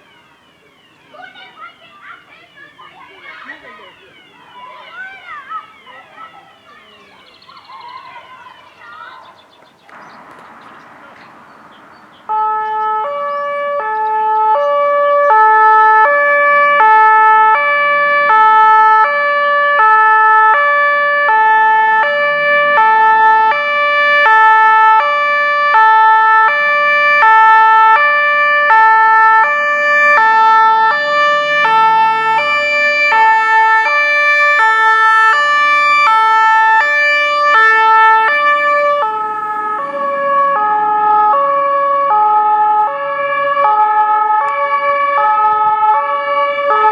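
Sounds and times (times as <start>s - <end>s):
two-tone fire engine siren: 0.0s - 9.3s, 10.0s - 46.9s
faint engine noise: 0.0s - 15.1s, 37.5s - 42.2s.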